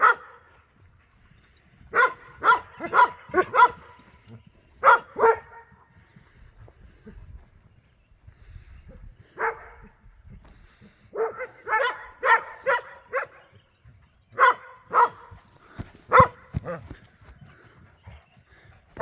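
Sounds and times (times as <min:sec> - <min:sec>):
dog barking: 0:00.0 - 0:00.5, 0:01.9 - 0:04.0, 0:04.8 - 0:05.8, 0:09.4 - 0:09.9, 0:11.1 - 0:13.5, 0:14.4 - 0:15.4, 0:16.1 - 0:16.9.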